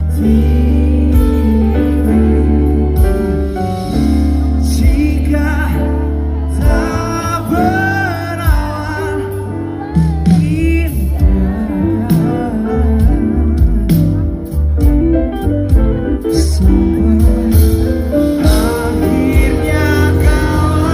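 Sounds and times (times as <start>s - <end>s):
person singing: 0.0s - 14.8s, 15.7s - 20.9s
live band music: 0.0s - 20.9s
heavy sustained bass: 15.8s - 20.9s.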